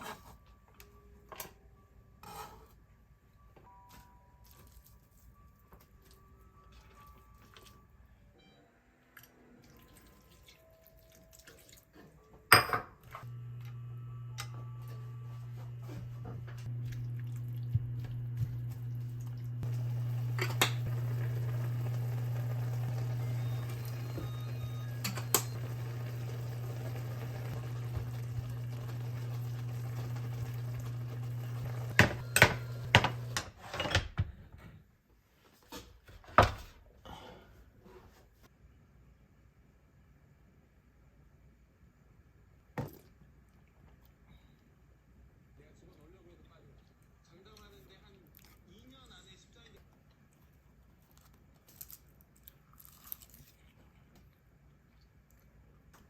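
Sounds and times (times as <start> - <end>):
steady low hum: 13.2 - 33.3.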